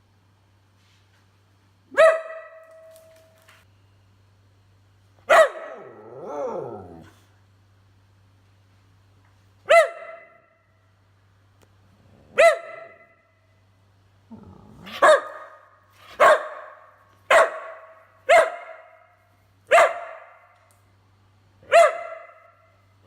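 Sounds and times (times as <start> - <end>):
dog barking: 1.9 - 3.1, 5.3 - 6.0, 9.6 - 10.7, 12.3 - 13.3, 14.9 - 20.6, 21.6 - 22.8
dog grumbling: 14.3 - 15.0.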